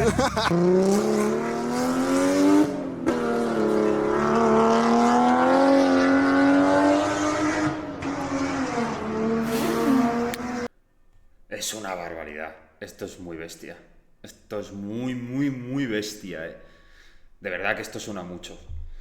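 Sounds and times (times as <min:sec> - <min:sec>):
car engine at full throttle: 0:00.0 - 0:10.7.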